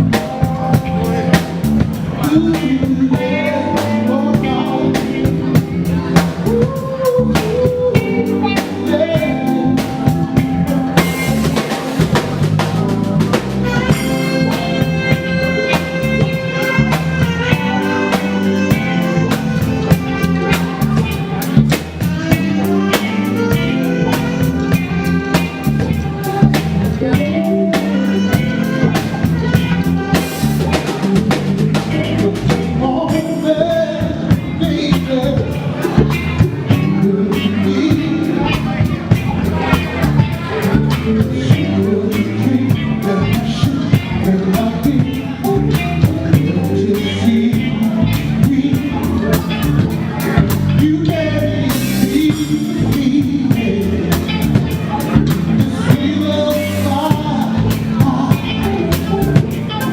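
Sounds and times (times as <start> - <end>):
drum kit beat: 0.0 - 59.9
guitar: 0.0 - 59.9
keyboards: 0.0 - 59.9.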